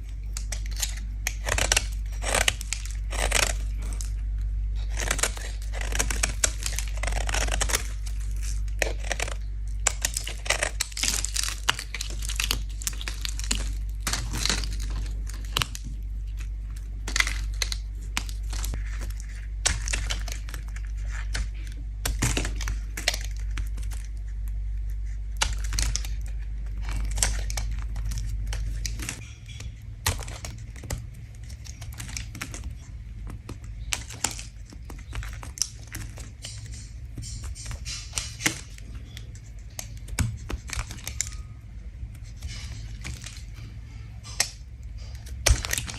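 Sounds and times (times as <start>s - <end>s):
soap being scraped: 0.0s - 45.9s.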